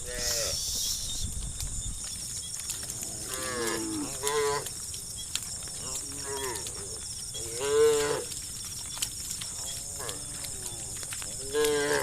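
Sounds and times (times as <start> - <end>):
cattle mooing: 3.0 - 4.7, 9.8 - 12.0.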